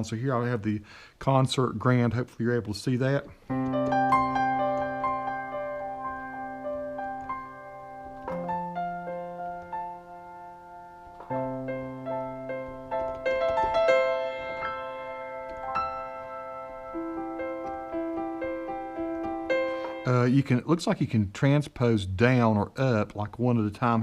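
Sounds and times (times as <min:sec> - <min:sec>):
slow piano melody: 0:03.4 - 0:20.4.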